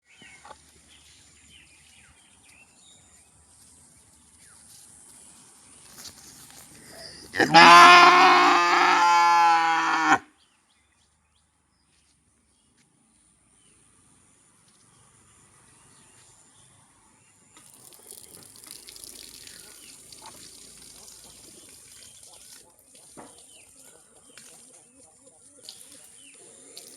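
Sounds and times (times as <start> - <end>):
cow mooing: 7.4 - 10.2.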